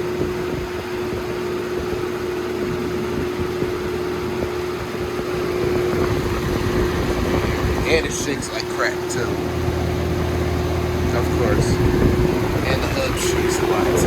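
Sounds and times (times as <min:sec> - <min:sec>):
box fan air rush: 0:00.0 - 0:14.0
fan electric hum: 0:00.0 - 0:14.0.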